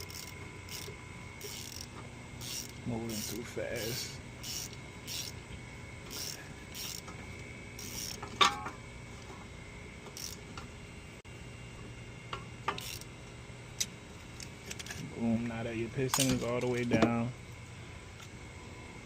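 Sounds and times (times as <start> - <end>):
ratchet clicking: 0.0 - 5.4, 6.1 - 7.2, 7.8 - 8.4, 10.1 - 10.4, 12.7 - 13.1.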